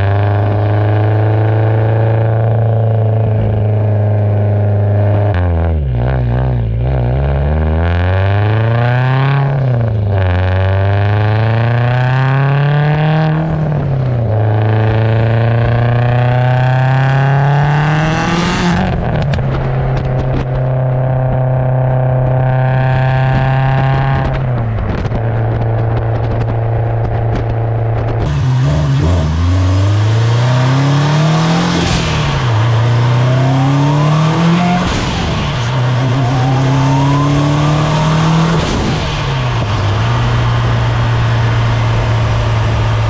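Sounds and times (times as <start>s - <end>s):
turbocharged car engine revving: 0.0s - 43.0s
turbo rushing burst: 28.3s - 42.1s.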